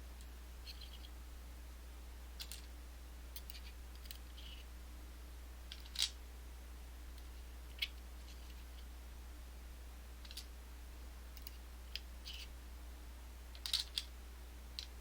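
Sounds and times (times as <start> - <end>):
metal lock parts clicking: 13.6 - 14.1.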